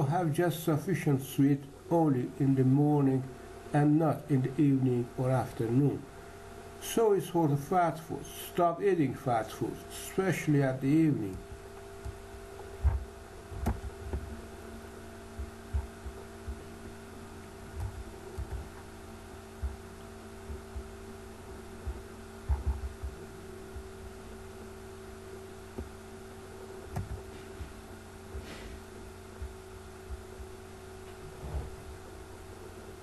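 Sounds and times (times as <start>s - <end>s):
steady background hum: 0.0s - 33.0s
dull low thumps: 11.4s - 24.3s, 29.4s - 30.6s.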